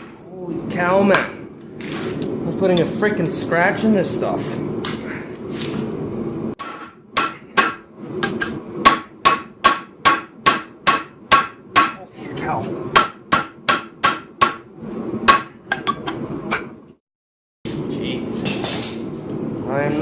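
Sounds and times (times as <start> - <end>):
hammer striking steel bearing: 6.6 - 12.0, 12.9 - 14.7, 15.3 - 16.2.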